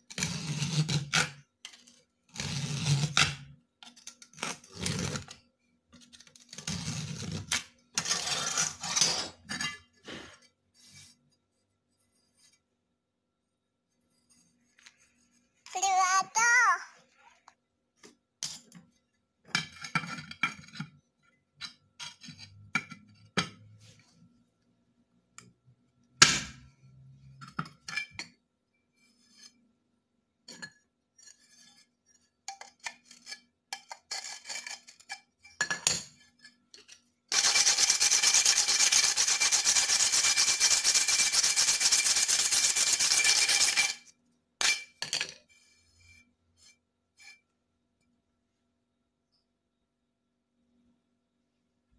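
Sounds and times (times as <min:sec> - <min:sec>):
rasping scrape across tile: 0:00.0 - 0:05.4, 0:06.1 - 0:11.3, 0:29.0 - 0:29.6, 0:31.2 - 0:36.6, 0:37.3 - 0:44.8, 0:45.4 - 0:47.4.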